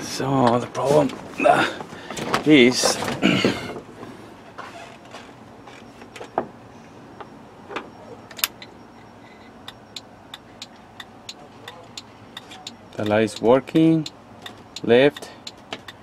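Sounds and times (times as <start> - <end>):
turn signal flasher clicking: 4.9 - 16.0.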